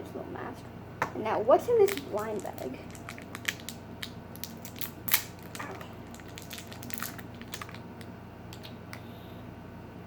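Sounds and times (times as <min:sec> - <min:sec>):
plastic bag crinkling: 0:01.8 - 0:08.1.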